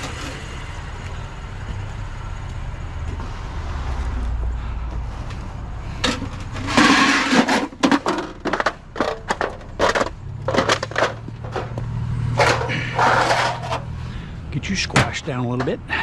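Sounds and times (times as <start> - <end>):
scrap clattering and scraping: 5.3 - 14.2
rustling clatter: 6.0 - 13.9.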